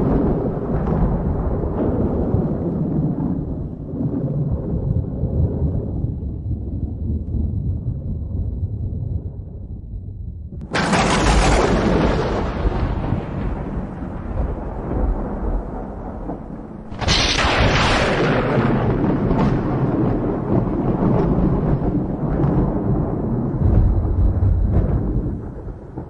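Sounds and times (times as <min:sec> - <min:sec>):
thunder crack and rumble: 0:00.0 - 0:26.0.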